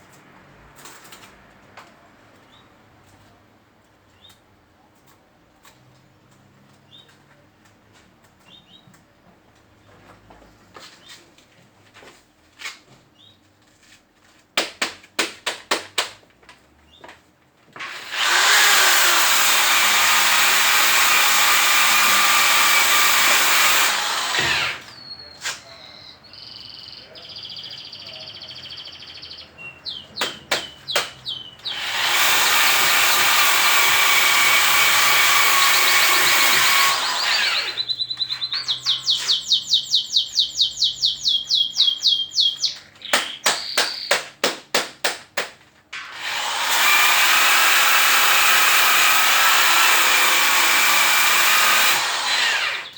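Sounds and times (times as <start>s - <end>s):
small birds singing: 2.4s - 2.8s, 4.1s - 4.4s, 6.7s - 7.6s, 8.4s - 9.1s, 13.1s - 13.5s, 16.9s - 17.2s, 24.2s - 32.0s, 36.7s - 44.4s, 52.5s - 52.9s.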